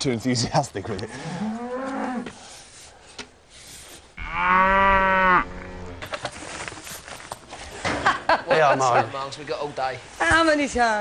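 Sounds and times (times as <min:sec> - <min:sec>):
cow mooing: 0:04.2 - 0:06.0.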